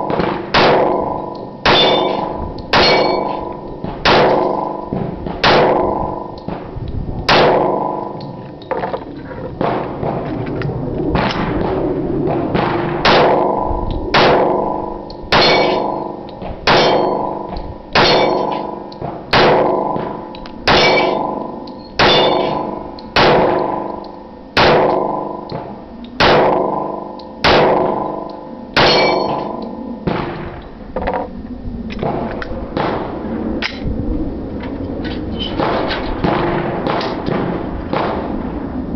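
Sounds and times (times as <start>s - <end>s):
pistol shots with ringing tail: 0.0s - 6.4s, 7.3s - 8.2s, 12.6s - 24.0s, 24.6s - 30.6s, 35.6s - 38.3s.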